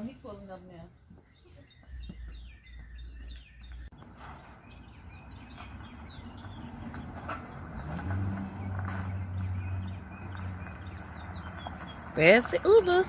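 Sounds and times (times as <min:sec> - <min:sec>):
birds chirping: 0:00.0 - 0:13.0
car engine humming: 0:03.9 - 0:13.0.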